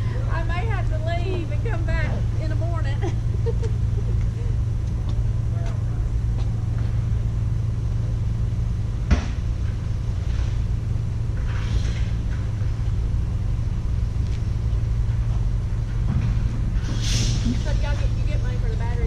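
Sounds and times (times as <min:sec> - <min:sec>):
vehicle engine idling: 0:00.0 - 0:19.0
brief hiss: 0:16.9 - 0:17.6.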